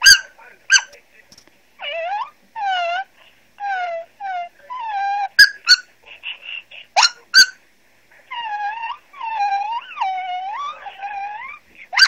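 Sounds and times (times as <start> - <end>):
dog-like whines: 1.8 - 5.9, 8.3 - 12.0.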